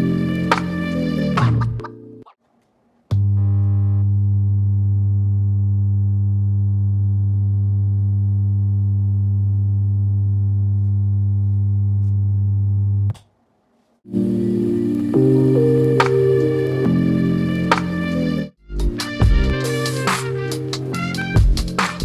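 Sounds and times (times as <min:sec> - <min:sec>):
subwoofer low hum: 0:03.1 - 0:13.1, 0:15.1 - 0:20.0, 0:20.8 - 0:22.0.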